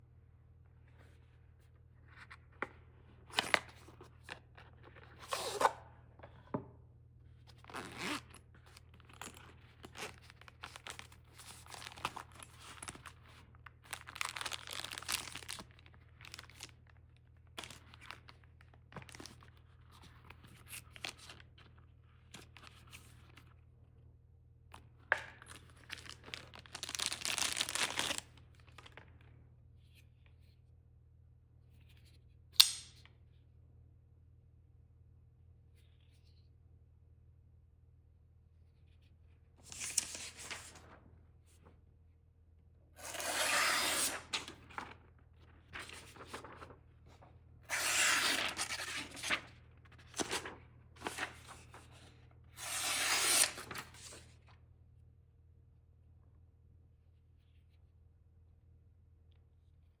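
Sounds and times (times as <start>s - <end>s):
packaging tearing and crinkling: 13.9s - 16.7s, 25.5s - 28.3s.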